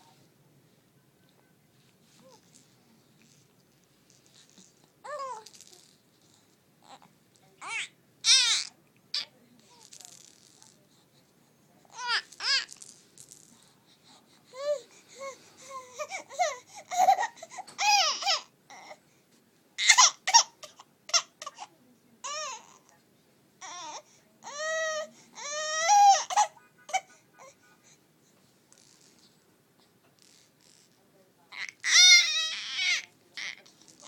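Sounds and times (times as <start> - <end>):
baby squealing and screeching: 7.6 - 8.7, 31.6 - 33.6.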